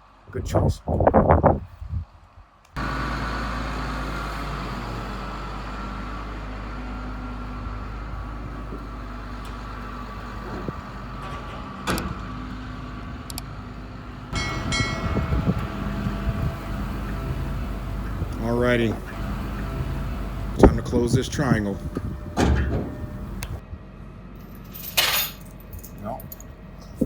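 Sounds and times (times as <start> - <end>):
heavy equipment engine running: 2.8 - 24.8
high metallic tone: 14.4 - 17.0.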